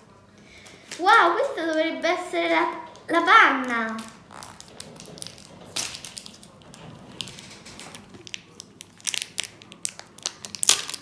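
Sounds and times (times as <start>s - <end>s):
plastic container crinkling: 3.0s - 11.0s.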